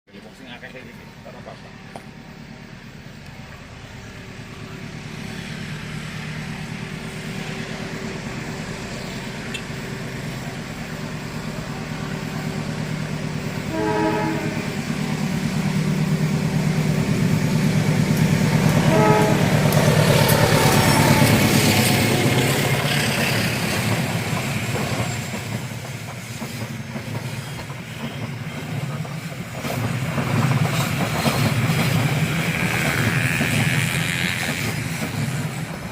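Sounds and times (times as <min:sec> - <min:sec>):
diesel train engine drone: 0:00.1 - 0:35.9
wheels rushing on rails: 0:00.1 - 0:35.9
train horn bursts: 0:13.7 - 0:14.8, 0:18.7 - 0:21.6.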